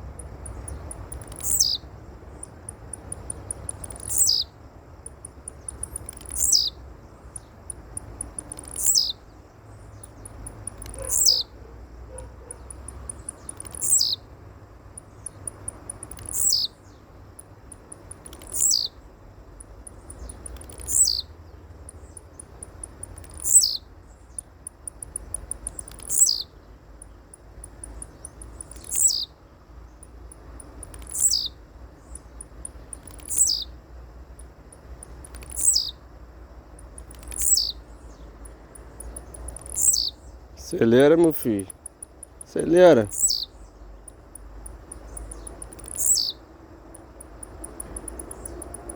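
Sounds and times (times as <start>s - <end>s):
bird whistle call: 11.0s - 11.5s, 43.0s - 43.5s.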